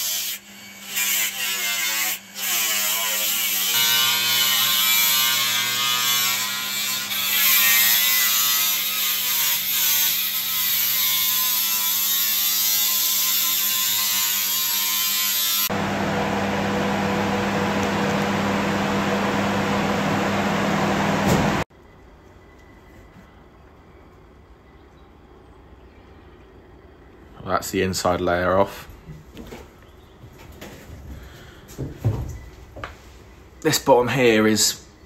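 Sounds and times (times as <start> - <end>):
power tool cutting: 0.0 - 21.7.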